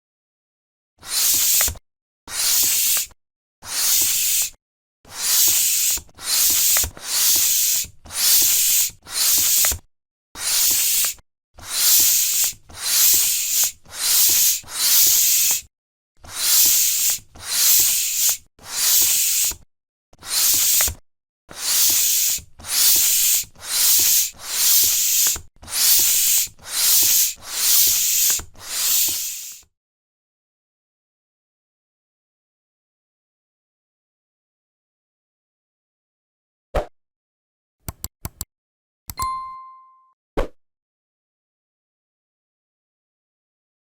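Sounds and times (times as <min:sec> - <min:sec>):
air pump hissing strokes: 0:01.0 - 0:09.8, 0:10.4 - 0:19.6, 0:20.2 - 0:29.6.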